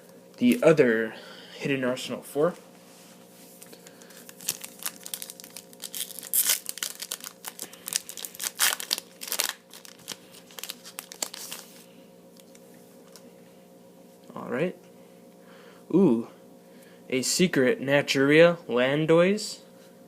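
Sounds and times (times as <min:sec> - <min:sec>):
foil wrapper tearing and crinkling: 0:03.7 - 0:11.8.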